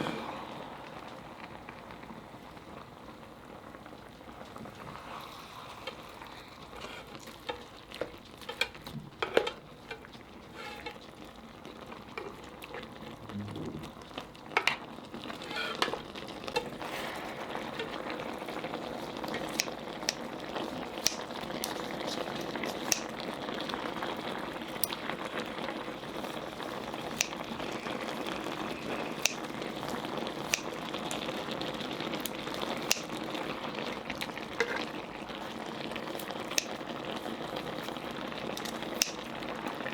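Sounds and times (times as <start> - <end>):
food sizzling and bubbling: 0.0 - 39.9
utensil clicking against pan: 6.8 - 11.0, 19.2 - 20.4, 21.0 - 23.3, 24.8 - 25.1, 27.0 - 28.4, 29.2 - 29.5, 30.5 - 31.2, 32.2 - 33.3, 34.2 - 35.0, 36.0 - 37.0, 38.5 - 39.8.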